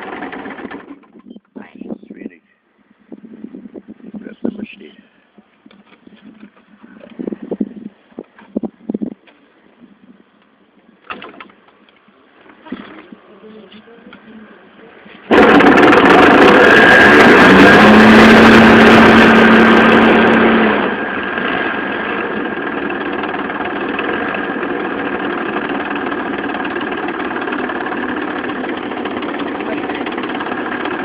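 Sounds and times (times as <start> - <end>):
engine starting and running: 0.0 - 1.4, 11.0 - 31.0.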